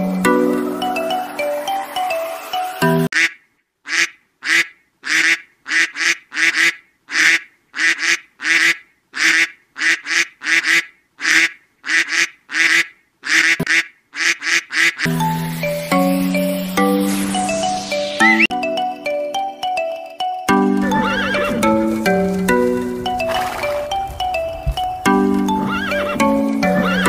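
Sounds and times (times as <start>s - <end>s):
background music: 0.0s - 3.1s, 15.1s - 27.0s
duck quacking: 3.1s - 15.1s, 20.8s - 21.8s, 25.5s - 27.0s.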